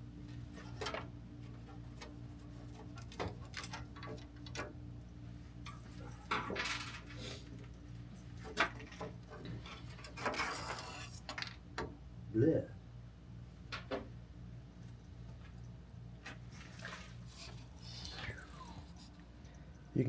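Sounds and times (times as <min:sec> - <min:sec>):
low steady hum: 0:00.0 - 0:20.0
scraping rustle: 0:08.4 - 0:11.5.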